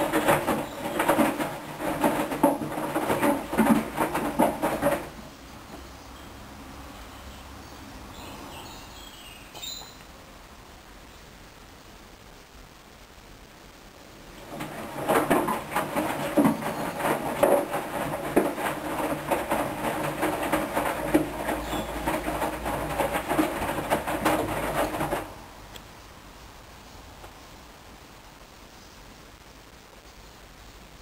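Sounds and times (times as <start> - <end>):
laundry tumbling and knocking: 0.0 - 5.8, 14.3 - 25.5
washing machine motor humming: 0.0 - 5.8, 14.3 - 25.5.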